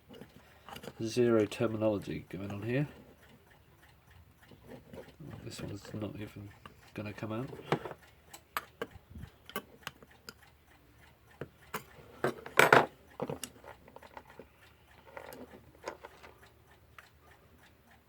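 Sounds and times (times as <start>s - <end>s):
small metal parts clicking: 11.7s - 16.4s.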